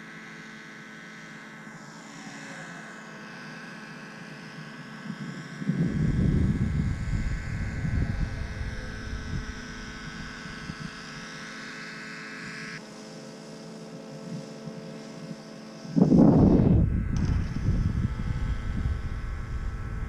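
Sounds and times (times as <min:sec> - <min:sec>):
aircraft engine hum: 0:01.7 - 0:20.0
wind buffeting microphone: 0:05.1 - 0:11.2, 0:15.9 - 0:20.0.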